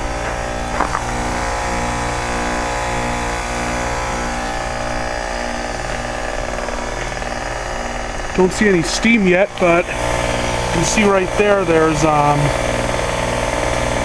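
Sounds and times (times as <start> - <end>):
heat pump machine hum: 0.0 - 14.0.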